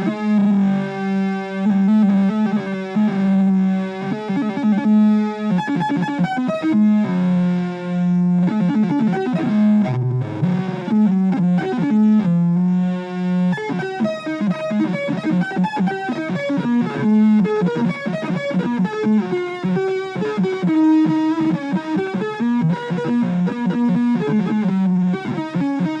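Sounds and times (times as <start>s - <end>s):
distorted electric guitar: 0.0s - 26.0s.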